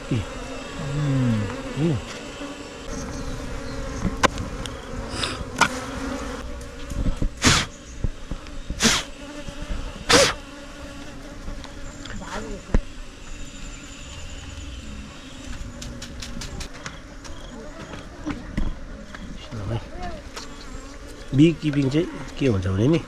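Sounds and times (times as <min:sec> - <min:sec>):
bees buzzing: 0:00.0 - 0:23.0
short hissing bursts: 0:07.4 - 0:07.8, 0:08.8 - 0:09.2, 0:10.1 - 0:10.4.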